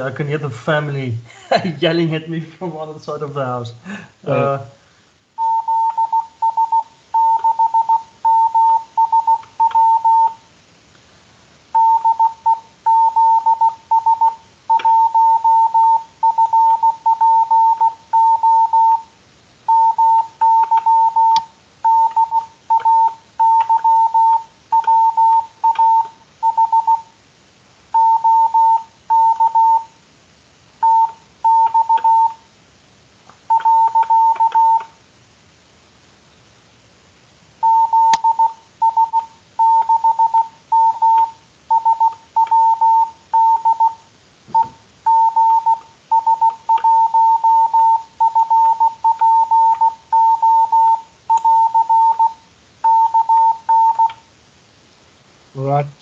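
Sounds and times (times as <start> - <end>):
morse code beeps: 5.4 - 10.4, 11.7 - 19.1, 19.7 - 27.1, 28.0 - 29.9, 30.8 - 32.4, 33.5 - 34.9, 37.6 - 54.2.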